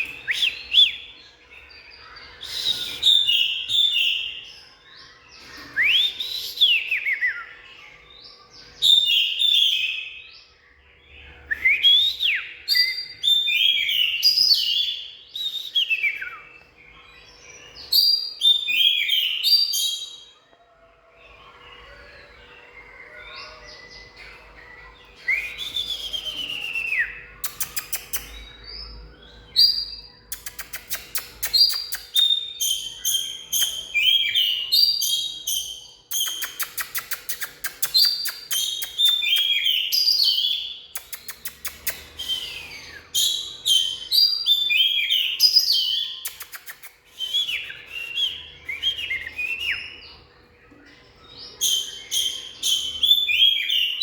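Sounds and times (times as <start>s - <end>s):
bird singing whistled phrases: 0.0s - 1.3s, 2.0s - 10.4s, 11.3s - 16.7s, 21.4s - 50.2s.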